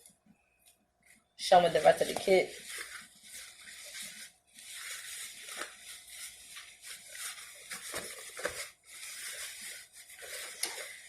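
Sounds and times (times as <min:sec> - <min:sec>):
rustling and handling noises: 0:00.0 - 0:11.0.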